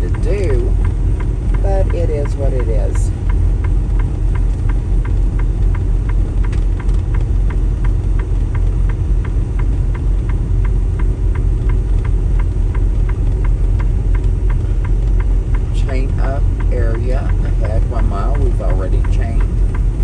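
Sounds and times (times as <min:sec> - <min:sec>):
truck engine and road rumble: 0:00.0 - 0:20.0.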